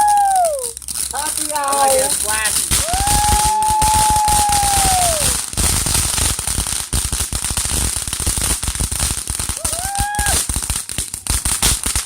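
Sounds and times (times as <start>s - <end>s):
firework whistle: 0.0s - 5.8s, 9.5s - 10.5s
fireworks crackling: 0.0s - 12.0s.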